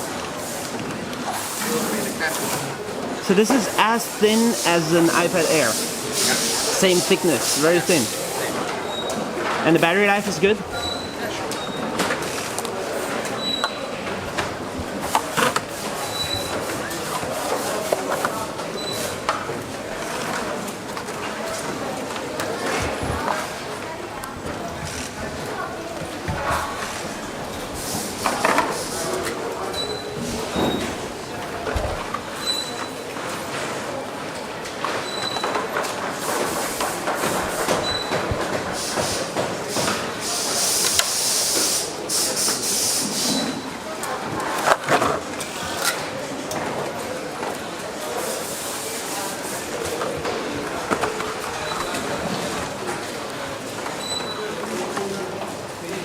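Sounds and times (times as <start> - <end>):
faint voices: 0.9 - 56.0
steady background din: 1.8 - 8.6, 9.6 - 10.8
air hissing bursts: 3.3 - 8.5, 38.8 - 43.6.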